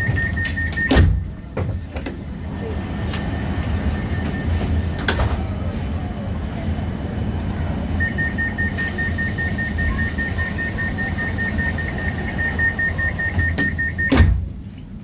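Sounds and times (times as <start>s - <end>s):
rapid high beeping: 0.0s - 1.0s, 8.0s - 14.2s
tram doors thudding shut: 0.0s - 2.2s, 4.1s - 5.7s, 9.7s - 14.7s
tram hum: 0.0s - 15.0s.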